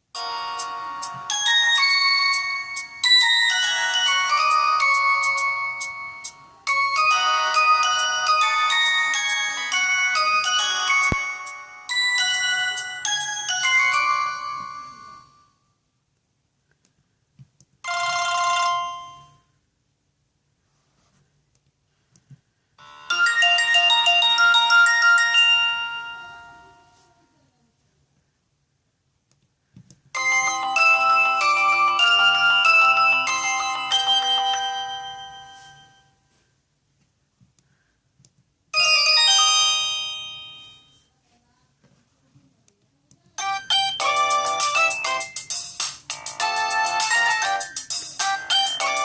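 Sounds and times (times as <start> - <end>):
phone ringtone melody: 0.2 - 15.4, 17.9 - 19.5, 22.8 - 27.1, 30.2 - 36.2, 38.8 - 41.1, 43.4 - 49.0.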